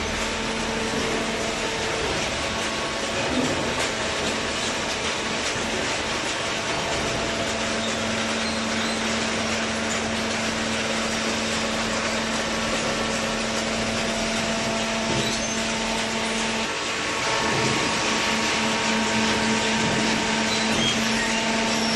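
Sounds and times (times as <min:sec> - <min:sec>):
baler machine running: 0:00.0 - 0:21.9.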